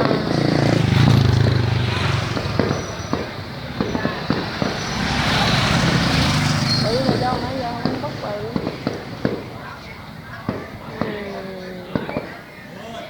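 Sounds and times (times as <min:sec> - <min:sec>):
fireworks popping and cracking: 0:00.0 - 0:12.5
road traffic engine hum: 0:00.0 - 0:12.6.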